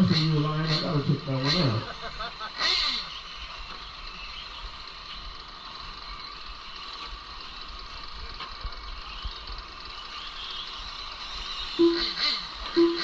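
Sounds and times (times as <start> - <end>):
distant toy truck motors whirring: 0.0 - 13.0.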